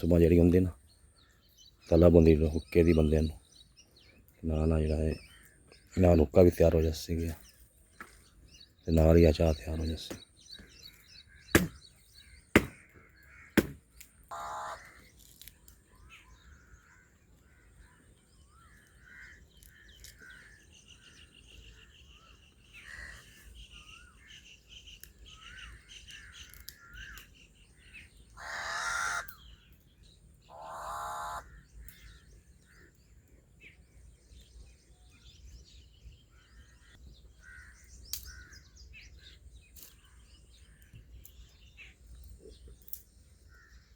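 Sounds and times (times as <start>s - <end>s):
small birds chirping: 0.0s - 43.9s
crows cawing: 11.2s - 15.3s, 16.3s - 20.8s, 22.7s - 24.3s, 25.4s - 27.3s, 28.3s - 29.7s, 30.5s - 33.0s, 36.3s - 38.8s, 43.5s - 43.9s
sharp knocks: 11.5s - 11.8s, 12.6s - 12.9s, 13.6s - 13.8s.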